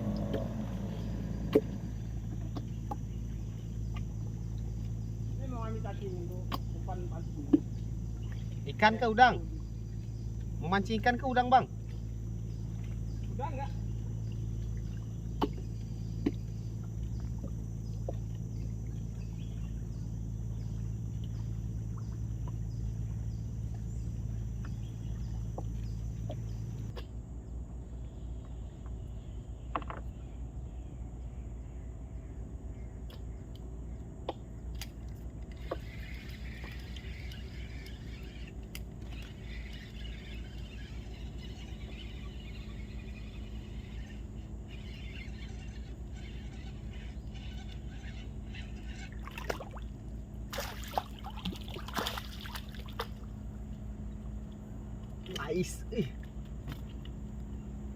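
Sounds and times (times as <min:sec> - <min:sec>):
low motor-like hum: 0:00.0 - 0:57.9
high chirping chorus: 0:35.6 - 0:53.7.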